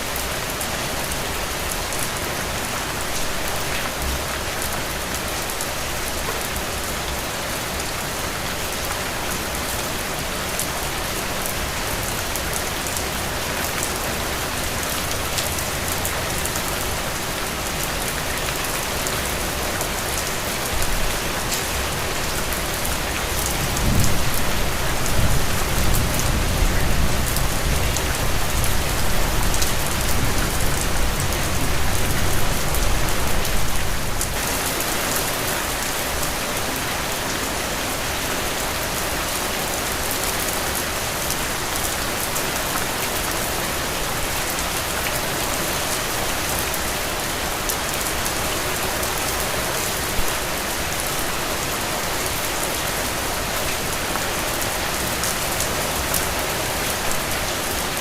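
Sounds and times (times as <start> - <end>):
heavy rain falling: 0.0 - 58.0
low rumble of thunder: 23.6 - 28.9.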